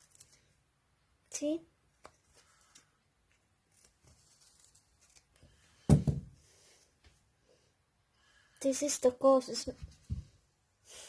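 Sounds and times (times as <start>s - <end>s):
loud thump: 5.9s - 6.3s.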